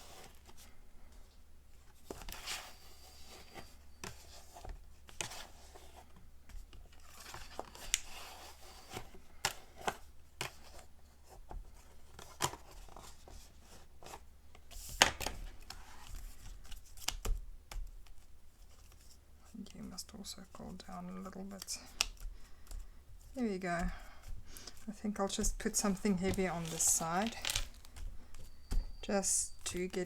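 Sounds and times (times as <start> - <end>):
paper rustling: 24.0 - 30.0.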